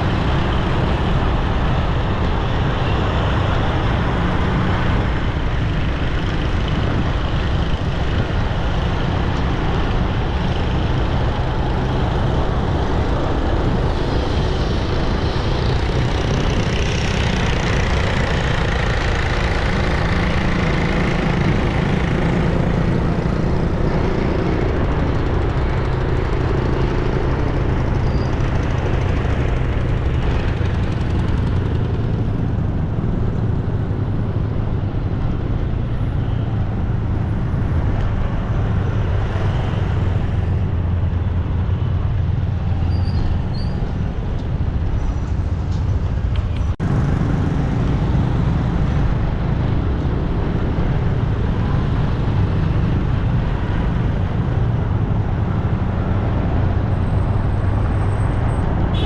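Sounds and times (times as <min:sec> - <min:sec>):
road traffic engine drone: 0:00.0 - 0:59.0.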